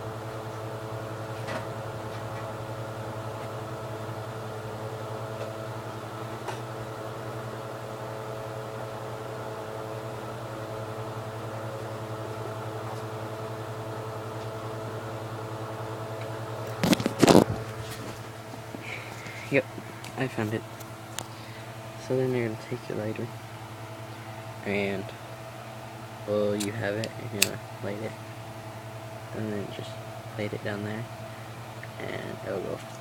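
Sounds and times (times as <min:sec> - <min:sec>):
steady mechanical hum: 0:00.0 - 0:33.0.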